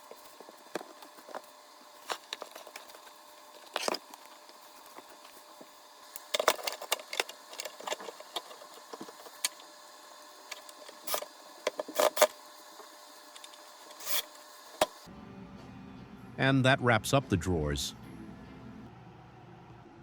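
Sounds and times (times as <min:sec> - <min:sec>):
workshop handling clicks and rattles: 0:06.2 - 0:09.7.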